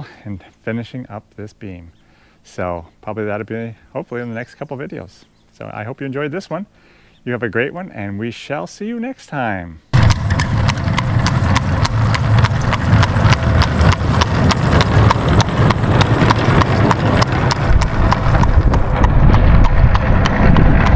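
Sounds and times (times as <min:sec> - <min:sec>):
continuous low rumble: 0:09.9 - 0:20.9
horse hooves clip-clopping: 0:10.0 - 0:20.9.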